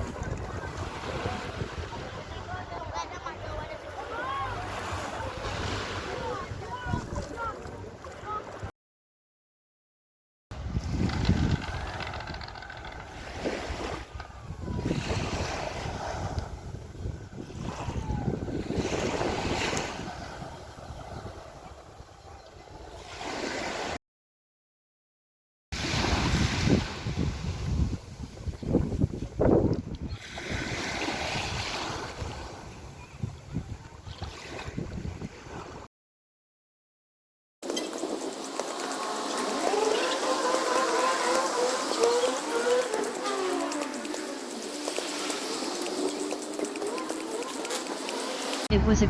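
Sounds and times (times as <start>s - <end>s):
wind buffeting microphone: 0.0s - 7.9s, 10.6s - 23.0s, 25.9s - 35.9s
waves washing on shore: 0.0s - 8.7s, 10.6s - 22.4s, 25.8s - 28.4s, 37.6s - 49.0s.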